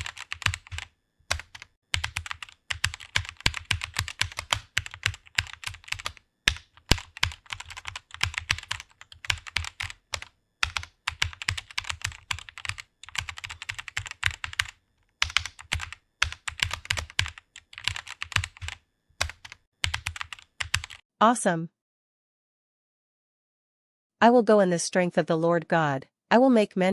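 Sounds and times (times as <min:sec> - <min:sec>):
computer keyboard typing: 0:00.0 - 0:21.0.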